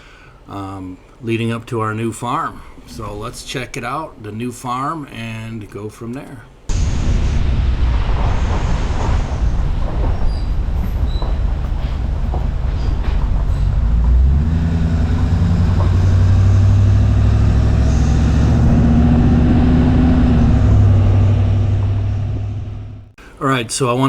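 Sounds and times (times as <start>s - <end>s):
truck engine drone: 6.7s - 23.2s.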